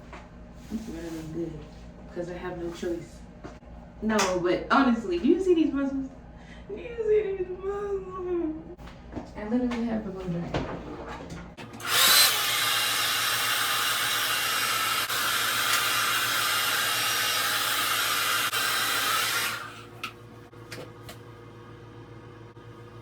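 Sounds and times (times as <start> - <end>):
hair dryer blowing air: 11.6 - 20.2.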